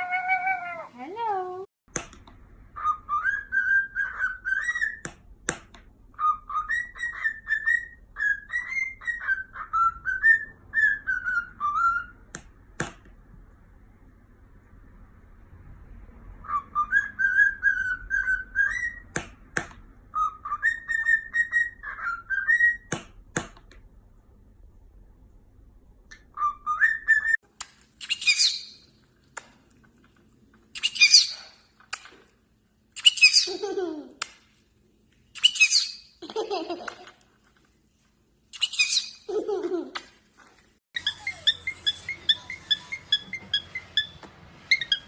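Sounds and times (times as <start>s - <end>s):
parrot whistling: 2.8s - 5.0s, 6.2s - 12.2s, 16.4s - 19.0s, 26.3s - 27.4s, 41.0s - 45.0s
parrot squawking: 33.0s - 33.7s, 38.6s - 39.4s, 41.0s - 45.0s.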